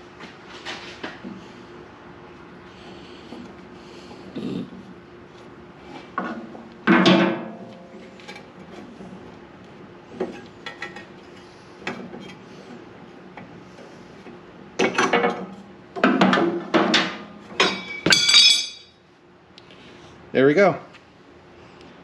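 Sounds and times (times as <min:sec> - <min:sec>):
ringing metal clanks: 0:17.6 - 0:19.0.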